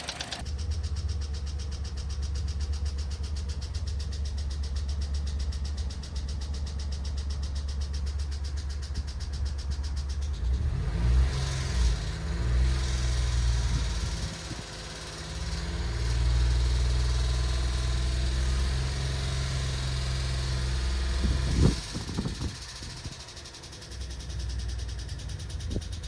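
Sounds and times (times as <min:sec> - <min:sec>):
car engine revving: 0:10.3 - 0:25.0.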